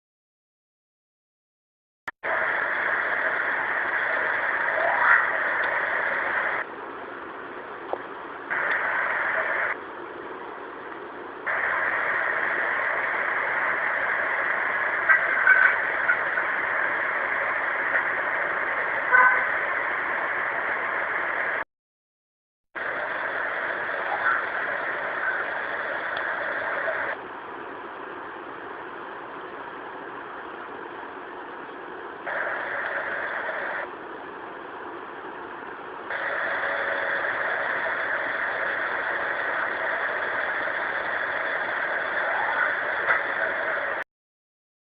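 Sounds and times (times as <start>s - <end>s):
recording hiss: 2.2s - 6.7s, 8.5s - 9.8s, 11.4s - 21.6s, 22.8s - 27.2s, 32.2s - 33.9s, 36.0s - 44.0s.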